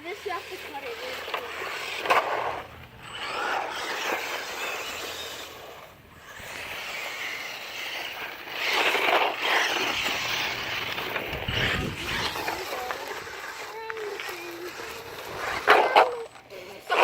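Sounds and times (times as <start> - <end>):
toy truck driving through grass: 0.0 - 17.0.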